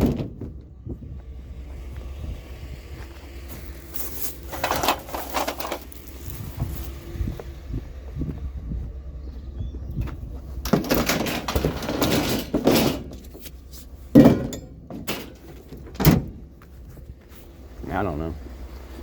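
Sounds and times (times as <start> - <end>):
metal scrap clattering: 3.7 - 6.9, 10.6 - 16.5.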